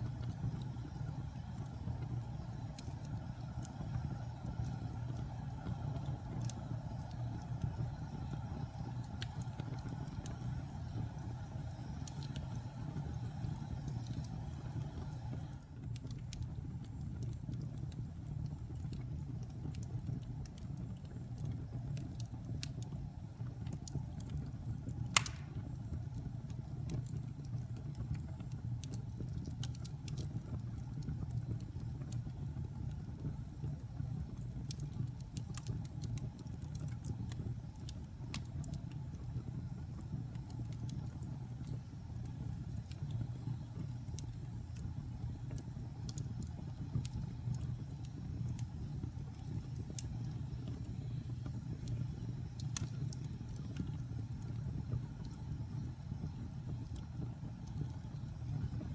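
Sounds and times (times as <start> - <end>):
wood fire crackling: 0.0 - 58.9
loud pop: 25.2 - 25.6.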